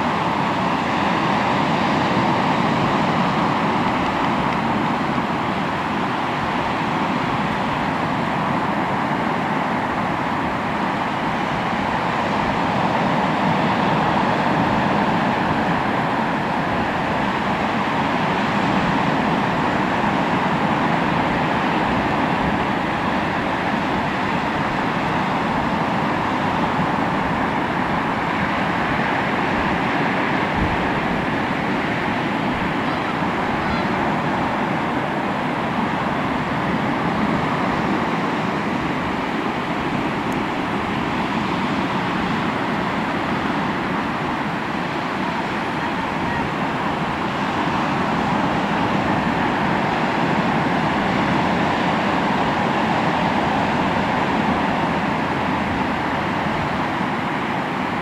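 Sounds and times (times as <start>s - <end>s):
sea waves washing on shore: 0.0s - 58.0s.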